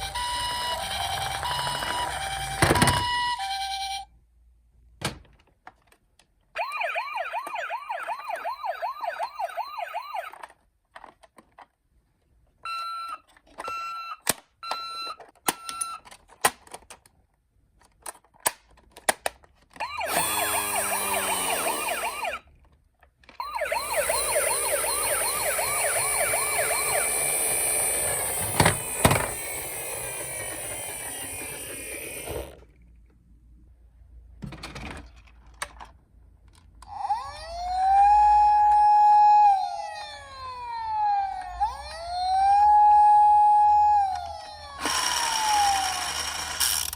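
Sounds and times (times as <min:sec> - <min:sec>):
toy siren warbling: 0:00.0 - 0:04.1, 0:06.6 - 0:10.5, 0:19.8 - 0:22.5, 0:23.4 - 0:32.6, 0:36.8 - 0:46.7.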